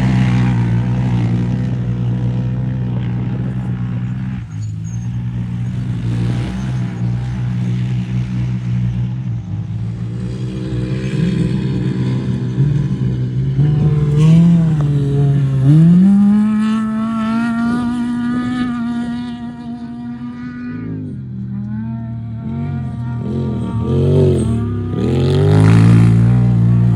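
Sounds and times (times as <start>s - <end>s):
race vehicle engine running hard: 0.0s - 26.9s.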